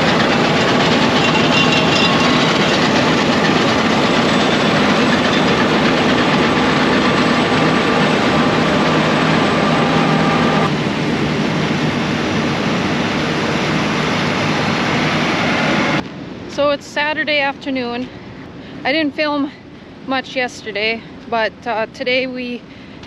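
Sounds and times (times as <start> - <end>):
heavy farm machinery rattling: 0.0 - 11.7
high whine: 0.0 - 16.7.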